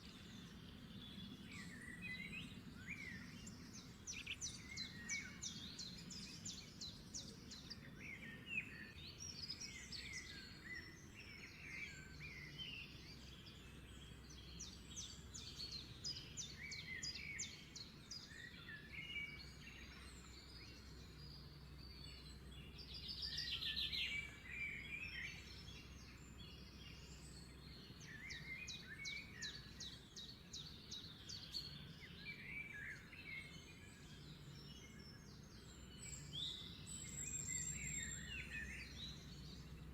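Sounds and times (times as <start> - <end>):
birds chirping and trilling: 0.0 - 39.9.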